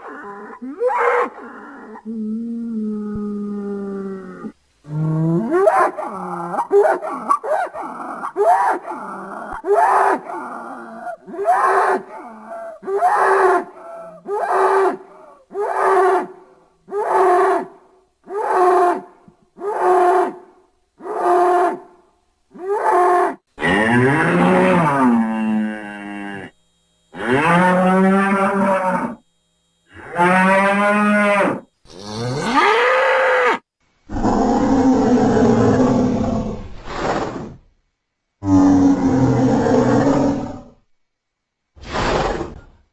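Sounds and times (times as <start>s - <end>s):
dinosaur grunting calls: 0.0s - 21.9s, 30.0s - 37.6s.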